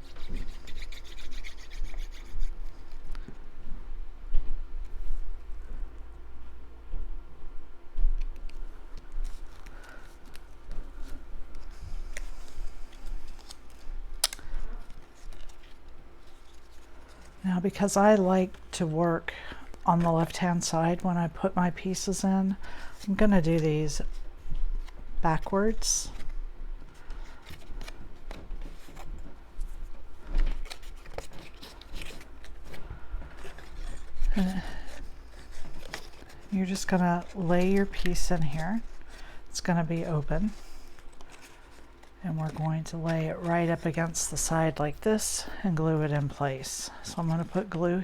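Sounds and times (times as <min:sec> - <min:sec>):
paper rustling: 0:08.4 - 0:18.7, 0:26.1 - 0:39.4, 0:40.0 - 0:44.5.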